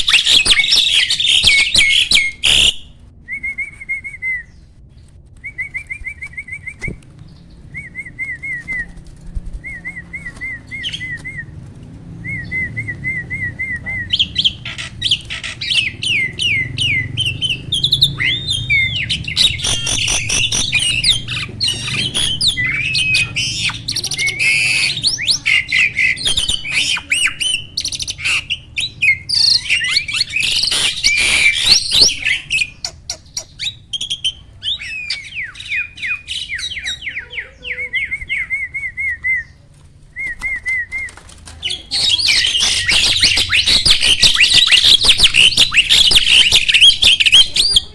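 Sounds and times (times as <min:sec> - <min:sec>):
starling singing: 0:00.0 - 0:03.0, 0:12.3 - 0:39.6, 0:41.6 - 0:47.9.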